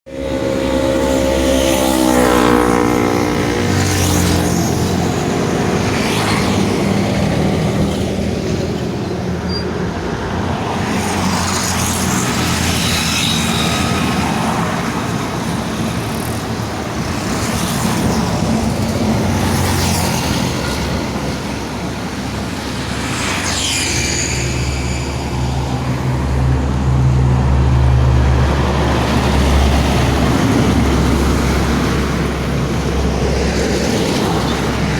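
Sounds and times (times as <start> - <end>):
engine or horn dropping in pitch: 0.1 - 5.6
highway traffic: 0.1 - 34.9
low engine hum: 0.1 - 34.9
vehicles rushing past: 0.1 - 34.9.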